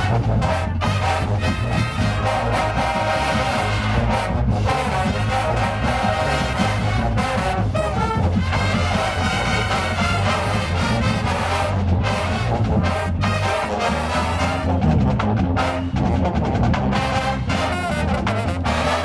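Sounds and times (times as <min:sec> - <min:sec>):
marching band brass: 0:00.0 - 0:19.0
marching band percussion: 0:00.0 - 0:19.0.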